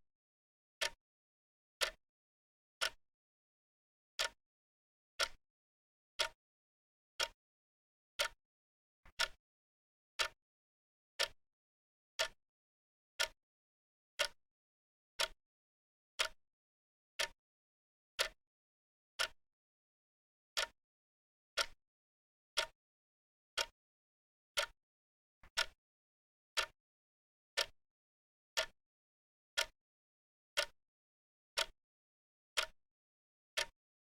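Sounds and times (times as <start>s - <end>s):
clock ticking: 0.8s - 1.0s, 5.2s - 5.4s, 9.1s - 9.4s, 25.5s - 25.8s, 31.6s - 31.8s, 33.6s - 33.8s.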